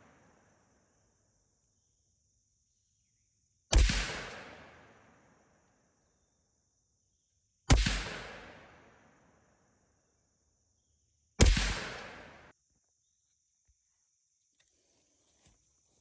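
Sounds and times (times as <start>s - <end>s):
rifle shots with echo: 3.7s - 5.2s, 7.7s - 9.0s, 11.4s - 12.5s.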